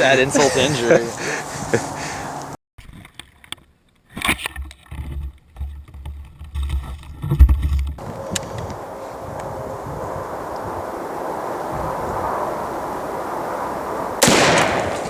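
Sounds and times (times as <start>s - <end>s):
rumbling buffets on microphone: 8.0s - 15.0s.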